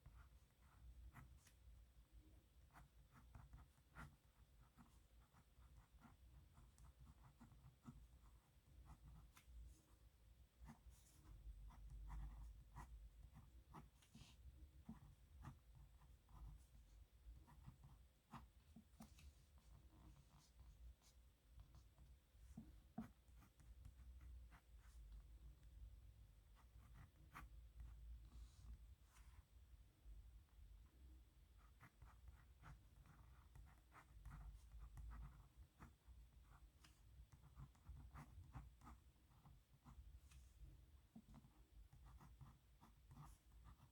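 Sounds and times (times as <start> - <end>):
pen scratching on paper: 2.7 - 10.0, 10.6 - 16.8, 17.4 - 20.7, 22.5 - 25.0, 26.6 - 29.4, 31.6 - 40.4, 41.2 - 43.9.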